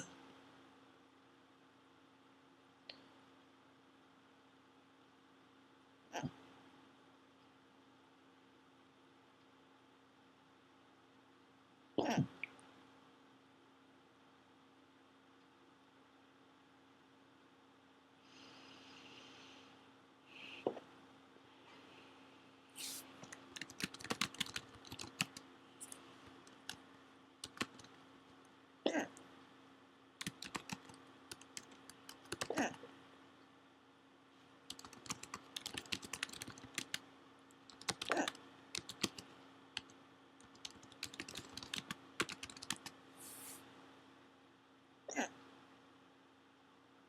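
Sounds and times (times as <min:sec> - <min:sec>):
faint steady hum: 0:00.0 - 0:47.0
woman hiccuping: 0:45.1 - 0:45.3.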